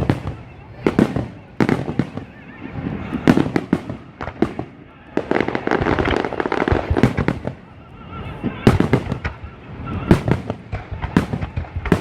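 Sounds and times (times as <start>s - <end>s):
fireworks bangs: 0.0s - 12.0s
fireworks crackling pops: 0.0s - 12.0s.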